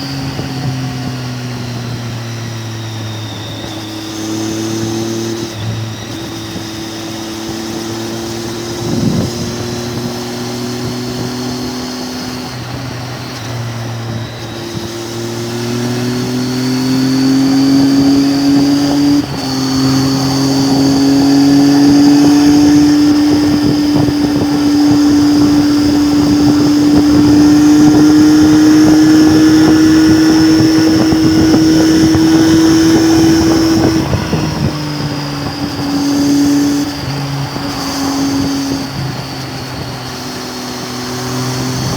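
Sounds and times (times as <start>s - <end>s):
motorcycle engine accelerating: 0.0s - 41.9s.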